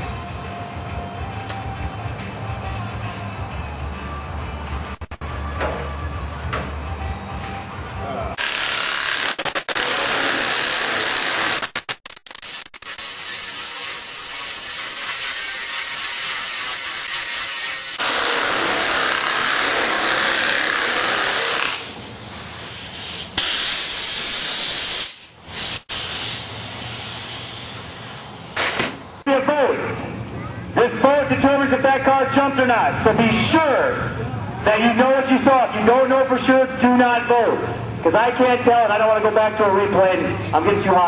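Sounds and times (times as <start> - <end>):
power tool cutting sheet metal: 8.4 - 22.0.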